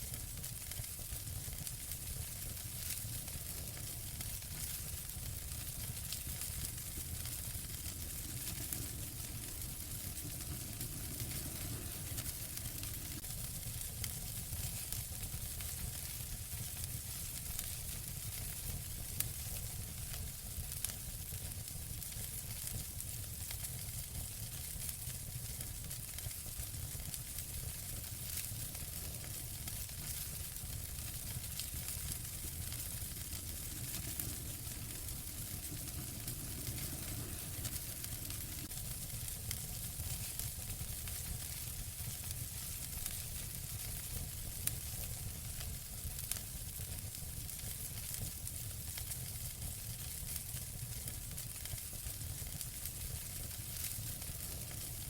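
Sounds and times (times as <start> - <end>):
wood fire crackling: 0.0 - 55.0
fire pops: 2.5 - 16.7, 27.0 - 46.4.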